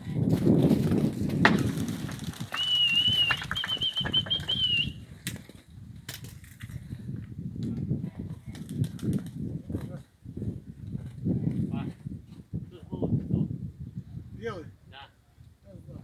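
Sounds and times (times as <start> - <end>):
pigeon wings flapping: 0.3 - 5.6, 8.4 - 9.4
thin high wavering whistle: 2.5 - 5.0.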